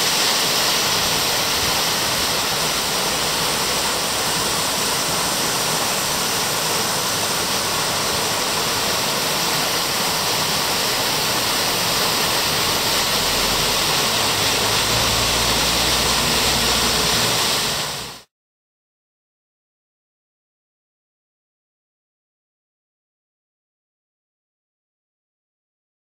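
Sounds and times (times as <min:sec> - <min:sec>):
waterfall rushing: 0:00.0 - 0:18.3.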